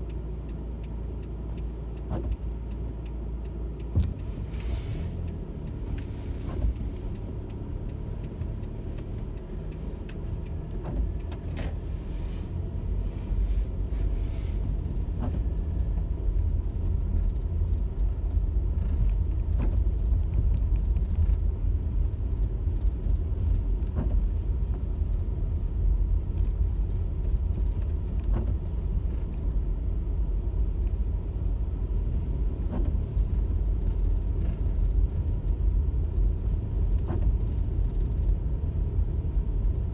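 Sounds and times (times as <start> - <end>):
faint clicks: 0.0 - 11.8
road and engine rumble: 0.0 - 39.9.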